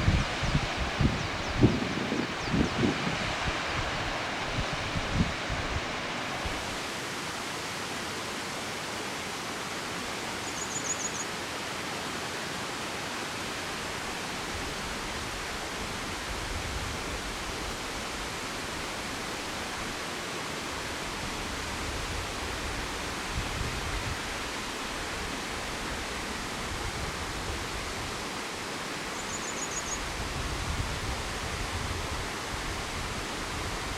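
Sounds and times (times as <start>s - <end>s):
waterfall rushing: 0.0s - 10.4s.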